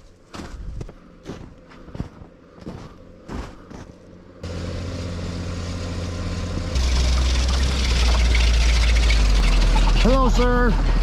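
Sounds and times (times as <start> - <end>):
footsteps in snow: 0.0 - 4.3
groomer engine running: 1.2 - 11.0.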